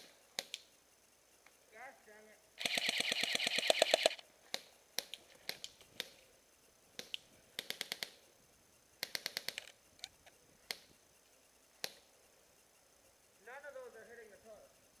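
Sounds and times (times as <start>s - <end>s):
airsoft guns firing: 2.6s - 6.1s.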